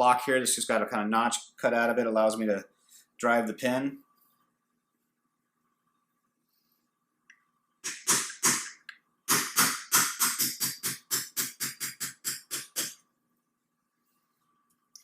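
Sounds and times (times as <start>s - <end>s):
hammer tapping a punch: 9.3s - 13.0s.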